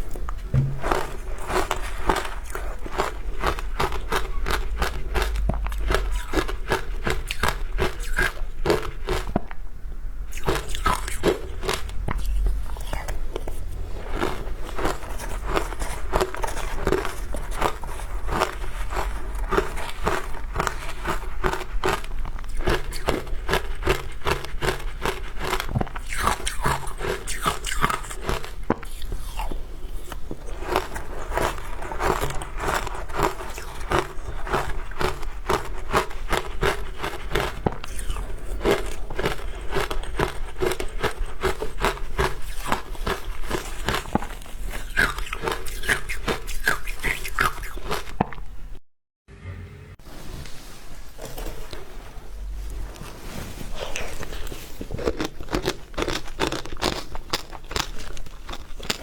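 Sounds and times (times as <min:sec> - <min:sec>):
chewing: 0:00.0 - 0:09.6, 0:10.3 - 0:48.6, 0:51.2 - 0:59.0
crunching of frozen ice: 0:00.5 - 0:09.5, 0:10.3 - 0:48.4, 0:52.7 - 0:59.0.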